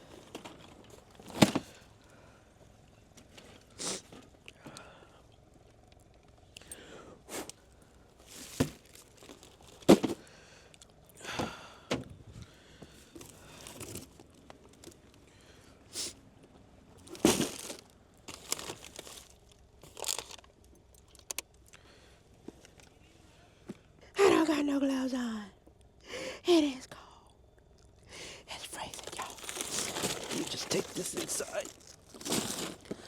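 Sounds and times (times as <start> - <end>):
snack packaging rustling: 8.2 - 9.9, 17.0 - 21.7, 28.6 - 33.0.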